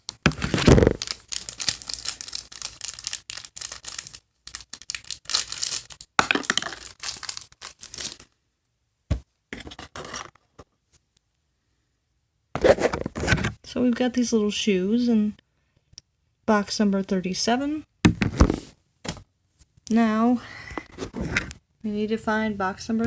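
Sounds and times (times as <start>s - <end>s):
packaging tearing and rustling: 0.0s - 8.4s.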